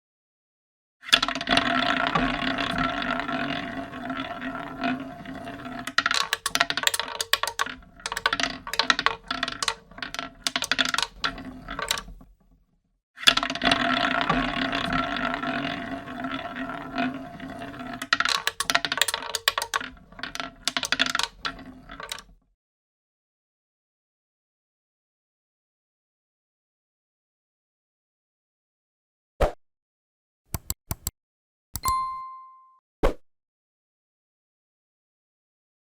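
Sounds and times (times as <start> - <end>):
roulette ball clattering clicks: 1.1 - 12.4, 13.2 - 22.3
roulette ball rolling whirr: 1.1 - 12.5, 13.2 - 22.3.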